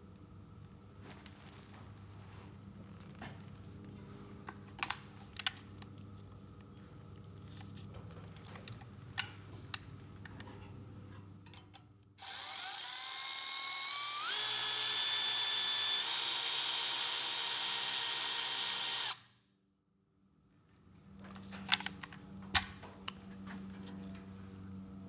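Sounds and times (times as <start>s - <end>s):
faint clicks of parts handled: 2.9s - 11.9s, 21.2s - 24.3s
power drill motor whine: 12.2s - 19.2s.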